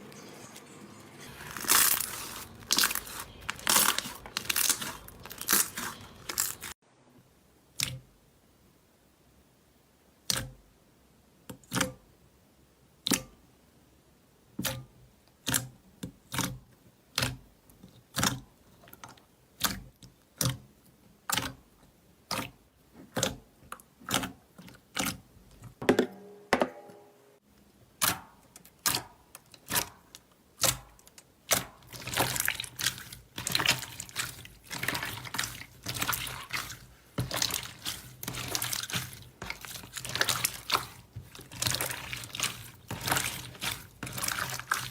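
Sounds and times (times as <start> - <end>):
slime popping and squishing: 1.4 - 6.7, 31.5 - 44.9.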